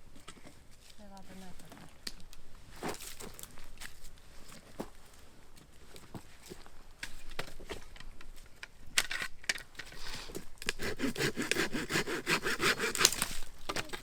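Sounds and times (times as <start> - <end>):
hand saw cutting wood: 10.3 - 14.0.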